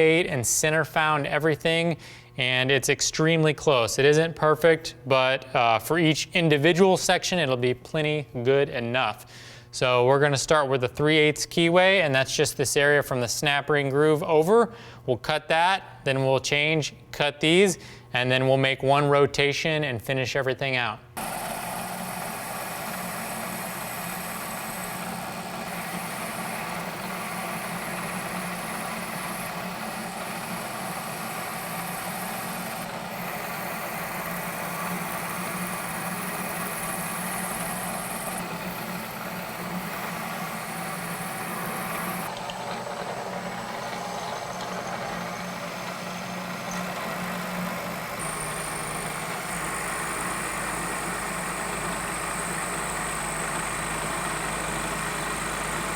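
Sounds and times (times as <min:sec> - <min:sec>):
hissing cutting noise: 0:21.2 - 0:55.9
milling machine hum: 0:21.2 - 0:55.9.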